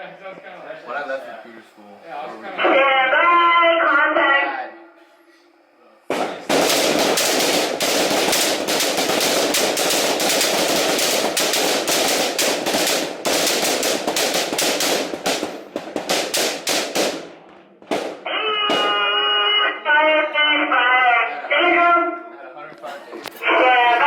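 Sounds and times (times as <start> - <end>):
rifles firing rapidly: 6.1 - 19.3.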